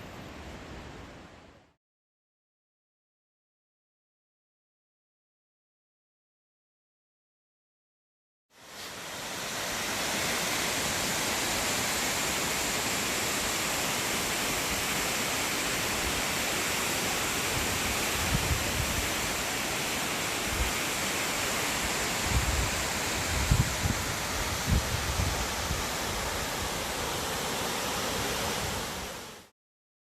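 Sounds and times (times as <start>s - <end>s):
waterfall roaring: 8.6s - 29.5s.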